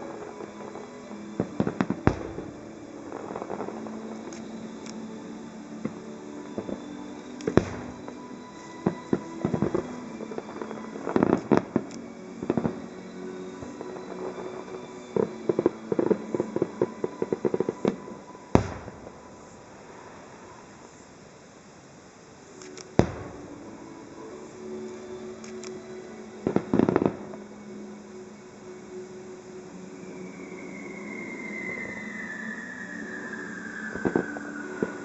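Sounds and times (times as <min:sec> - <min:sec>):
fireworks popping: 0:00.0 - 0:21.0, 0:22.6 - 0:23.7, 0:33.1 - 0:35.0
fireworks bursting with bangs: 0:00.0 - 0:21.7, 0:22.4 - 0:28.1, 0:29.7 - 0:35.0.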